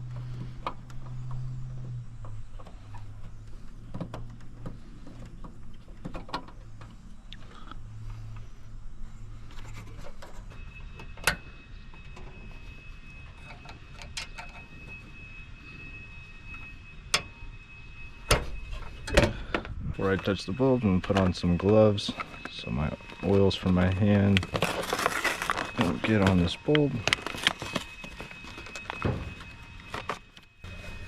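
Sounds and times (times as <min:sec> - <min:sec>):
low hum: 0:00.0 - 0:31.0
thin steady high tone: 0:06.5 - 0:31.0.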